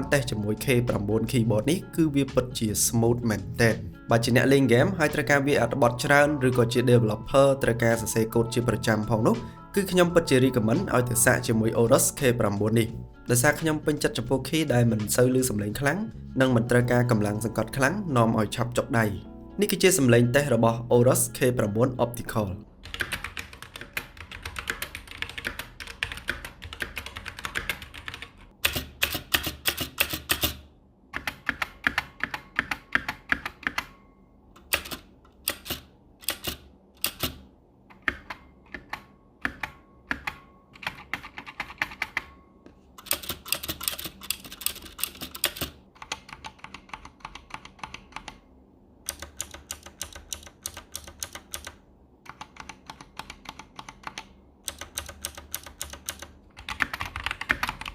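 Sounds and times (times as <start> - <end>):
mechanical keyboard typing: 22.8 - 34.0, 34.6 - 42.4, 43.0 - 48.4, 49.0 - 57.9.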